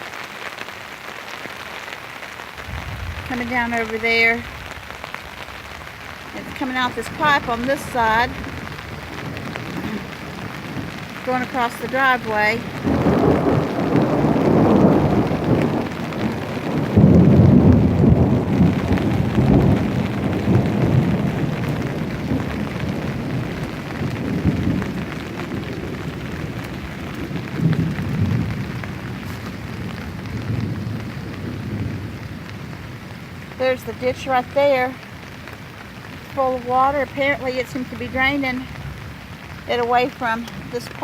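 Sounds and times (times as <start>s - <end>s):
rain falling: 0.0s - 41.0s.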